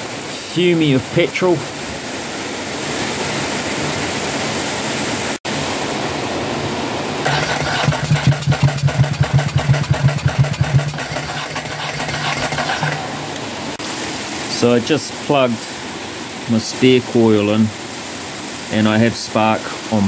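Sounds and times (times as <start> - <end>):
steady hiss: 7.2 - 20.0
motorcycle engine cranking: 7.3 - 13.2.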